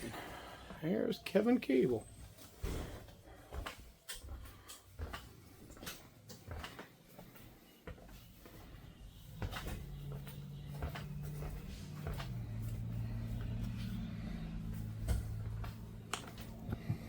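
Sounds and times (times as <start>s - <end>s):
low steady hum: 6.6s - 17.0s.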